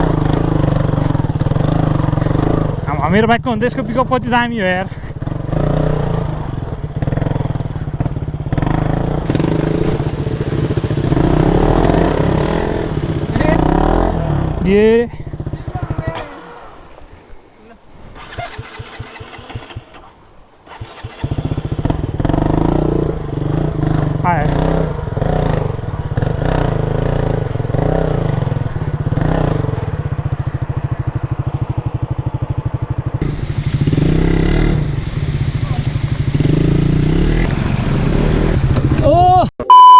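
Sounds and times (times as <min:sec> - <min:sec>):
motorcycle engine revving and idling: 0:05.2 - 0:14.1, 0:20.7 - 0:39.0
motorcycle engine revving: 0:09.3 - 0:13.6.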